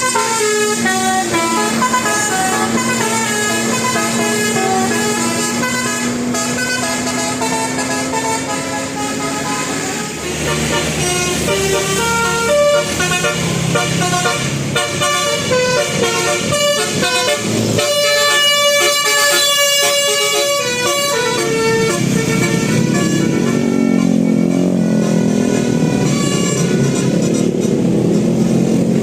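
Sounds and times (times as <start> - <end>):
vehicle engine speeding up: 0.0 - 19.4, 20.4 - 29.0
multi-tone air horn playing tune: 0.0 - 27.6.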